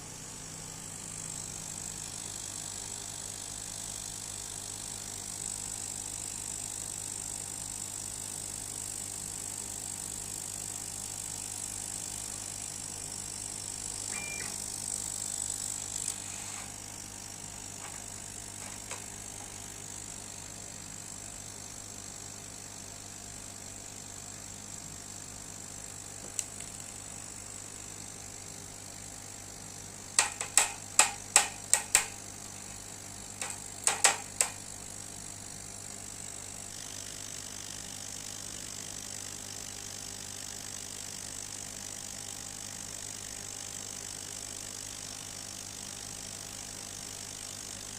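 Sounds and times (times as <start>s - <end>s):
laser cutter hum and whine: 0.0s - 47.9s
sharp clicks: 30.2s - 32.2s, 33.4s - 34.6s.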